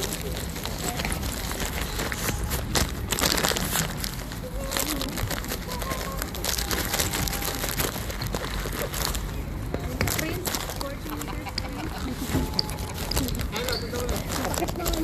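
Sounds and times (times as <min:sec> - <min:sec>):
microphone handling noise: 0:00.0 - 0:10.9.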